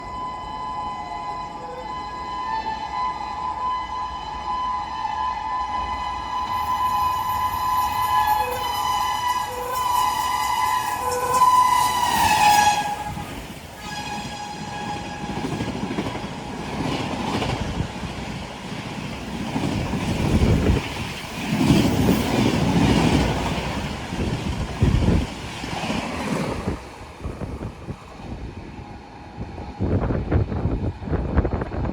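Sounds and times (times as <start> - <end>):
train coaches rumbling on rails: 0.0 - 31.9
locomotive horn blast: 0.9 - 15.7.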